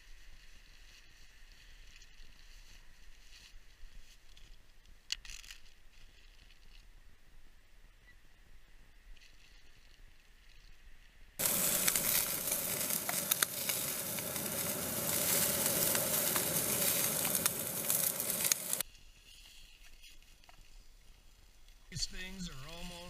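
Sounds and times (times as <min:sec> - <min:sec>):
sausages sizzling: 0:11.4 - 0:18.8.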